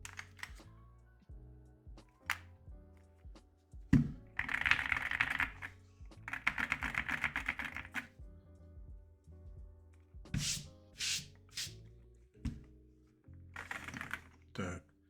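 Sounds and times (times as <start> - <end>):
background music: 0.0 - 15.0
mechanical keyboard typing: 4.4 - 5.7, 6.3 - 8.1, 13.6 - 14.2
keyboard thump: 12.5 - 12.7.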